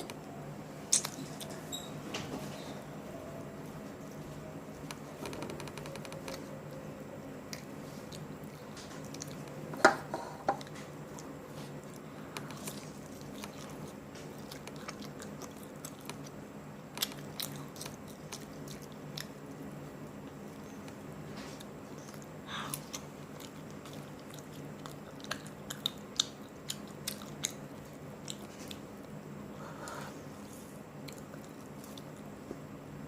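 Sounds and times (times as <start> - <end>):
steady low hum: 0.0 - 33.0
chewing and biting chicken: 10.7 - 20.6, 21.6 - 29.2.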